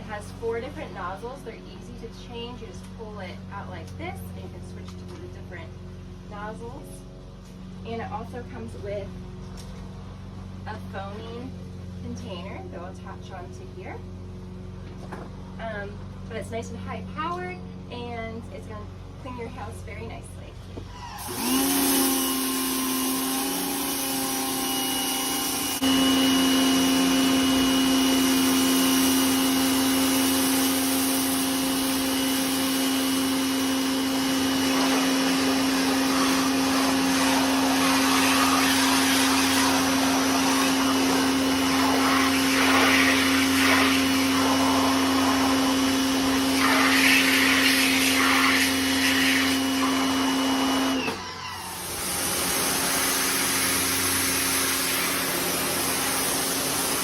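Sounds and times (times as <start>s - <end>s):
pressure washer motor hum: 0.0s - 57.0s
water jet hissing: 34.5s - 57.0s.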